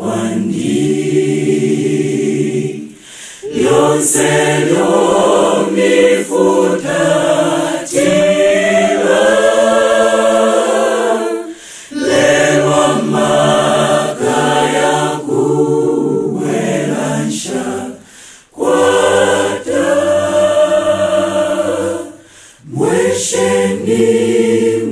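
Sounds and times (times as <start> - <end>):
choir singing a cappella: 0.0 - 24.9.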